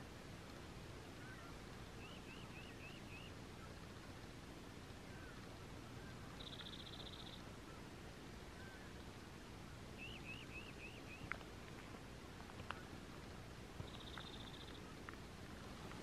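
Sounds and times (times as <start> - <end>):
steady low hiss: 0.0 - 16.0
faint bird calls: 1.0 - 4.1, 5.0 - 13.2, 13.8 - 15.2.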